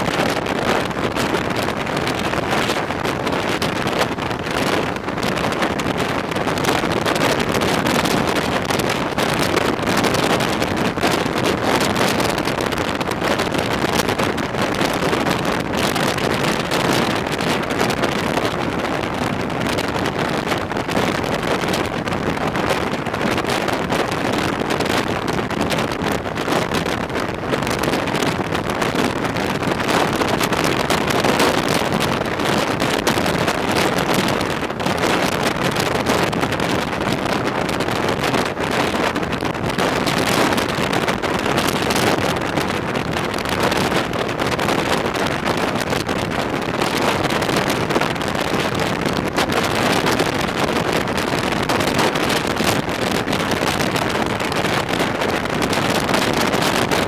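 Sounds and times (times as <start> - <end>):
wind rushing over microphone: 0.0 - 57.0.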